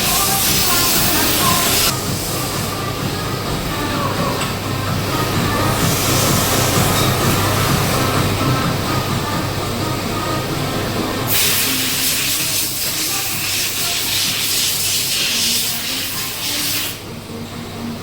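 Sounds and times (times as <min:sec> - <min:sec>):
compressed air hissing: 0:00.0 - 0:02.8, 0:05.7 - 0:07.8, 0:11.3 - 0:17.0
workshop hum: 0:00.0 - 0:18.0.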